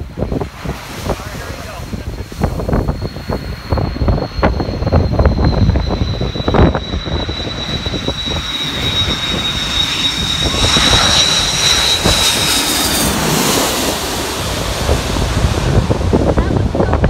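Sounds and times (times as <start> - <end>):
jet airliner engines passing: 0.0 - 17.0.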